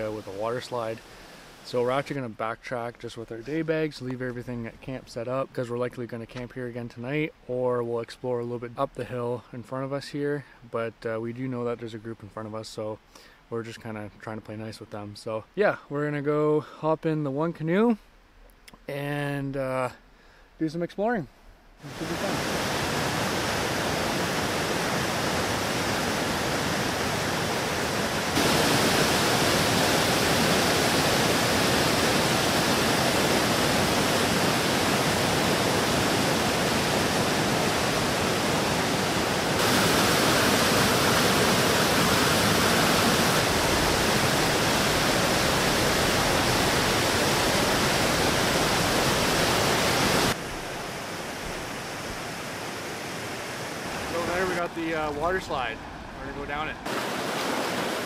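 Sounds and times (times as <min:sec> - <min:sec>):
waterfall rushing: 0:00.0 - 0:02.1, 0:21.8 - 0:58.0.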